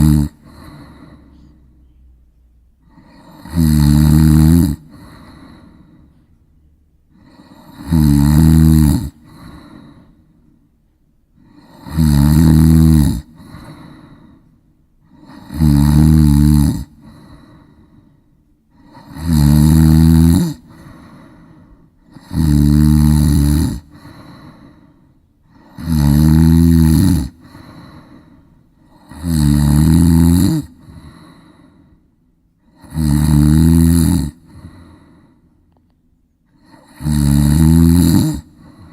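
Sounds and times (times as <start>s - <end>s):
loud snoring: 0.0s - 1.5s, 2.8s - 5.9s, 7.1s - 10.1s, 11.4s - 14.1s, 15.1s - 17.7s, 18.7s - 21.4s, 22.0s - 24.8s, 25.5s - 31.6s, 32.6s - 35.0s, 36.5s - 38.9s
quiet breathing: 0.0s - 12.0s, 12.8s - 29.8s, 30.5s - 33.0s, 33.7s - 37.1s, 37.7s - 38.9s.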